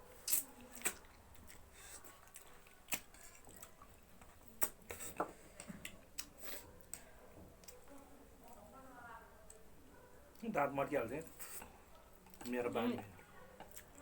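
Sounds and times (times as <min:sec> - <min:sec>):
wet chewing: 0:00.1 - 0:08.7, 0:11.2 - 0:14.0
lip smacks and clicks: 0:02.2 - 0:05.0, 0:05.6 - 0:07.8.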